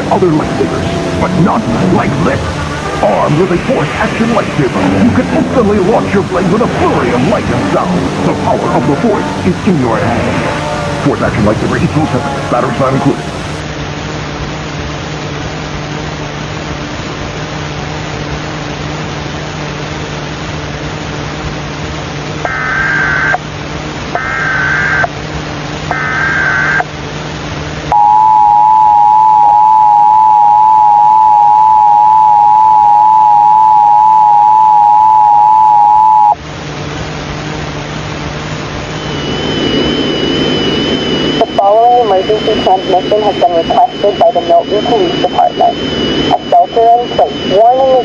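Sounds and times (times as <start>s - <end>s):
two-tone attention signal: 0.0s - 13.6s, 25.9s - 26.9s, 27.9s - 36.4s, 39.0s - 48.0s
warbling data bursts: 0.0s - 13.6s, 22.5s - 23.5s, 24.2s - 25.2s, 25.9s - 26.9s, 27.9s - 36.4s, 38.4s - 48.0s
static hiss and hum: 0.0s - 48.0s.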